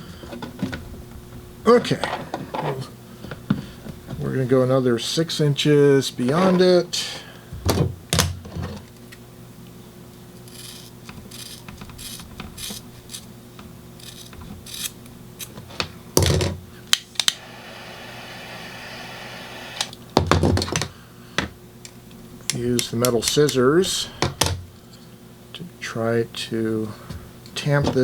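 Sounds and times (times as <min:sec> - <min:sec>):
steady hiss: 0:17.0 - 0:20.0.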